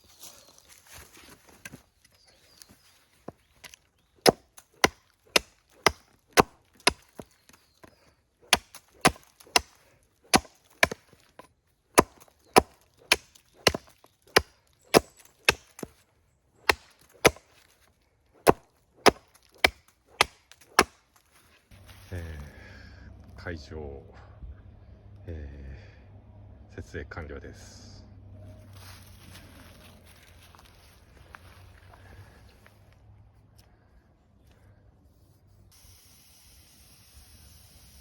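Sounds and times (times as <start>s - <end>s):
sharp wooden knocks: 8.5s - 11.1s, 12.0s - 15.9s, 16.7s - 17.5s, 18.4s - 21.0s.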